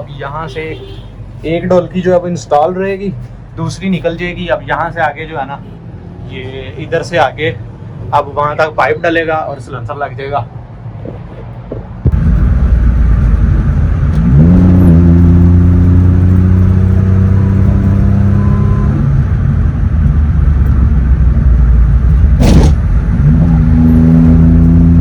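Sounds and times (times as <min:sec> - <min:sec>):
small car engine driving: 0:12.0 - 0:25.0
loud knock: 0:22.4 - 0:22.9.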